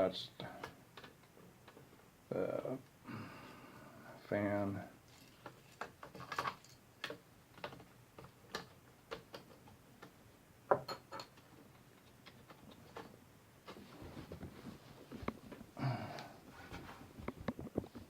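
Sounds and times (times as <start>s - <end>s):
plastic parts clicking and tapping: 5.1s - 13.2s.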